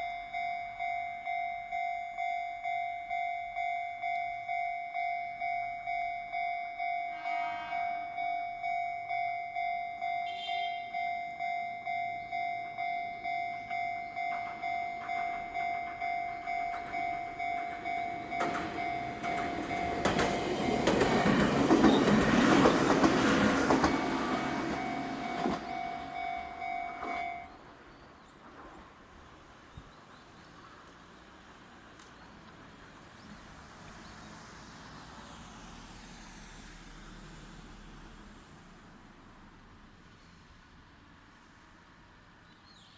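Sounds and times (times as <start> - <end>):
level crossing electronic bell: 0.0 - 21.0, 23.8 - 27.5
train rumble and wheel clatter: 12.2 - 35.5.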